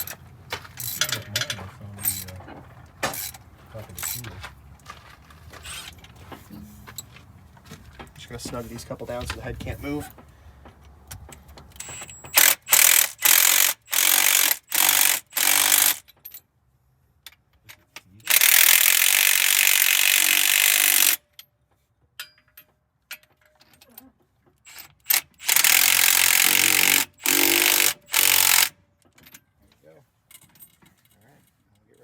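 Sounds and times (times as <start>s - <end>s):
impact wrench tightening bolts: 3.0s - 3.4s, 11.2s - 16.4s, 17.8s - 21.2s, 24.6s - 29.4s.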